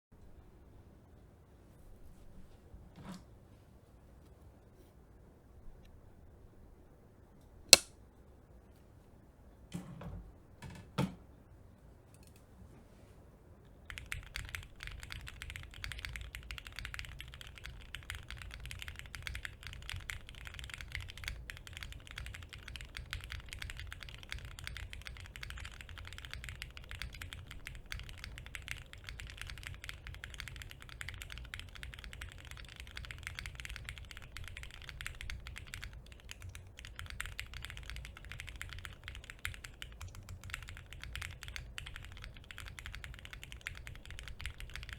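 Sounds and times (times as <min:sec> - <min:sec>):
mechanical keyboard typing: 0:13.9 - 0:44.9.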